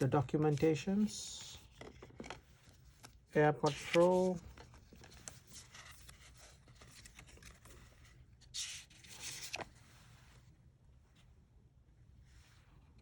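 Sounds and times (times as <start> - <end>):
paper and cardboard rustling: 0.0 - 10.2.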